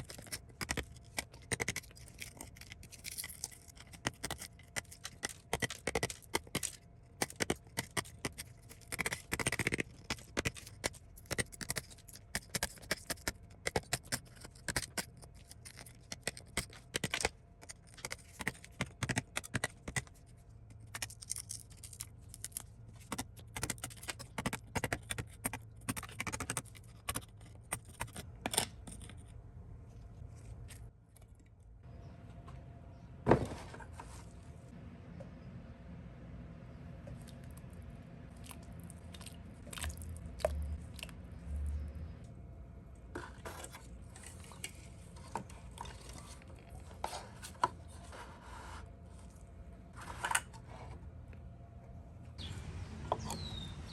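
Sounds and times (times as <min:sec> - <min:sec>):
small metal parts clicking: 0:00.0 - 0:18.4.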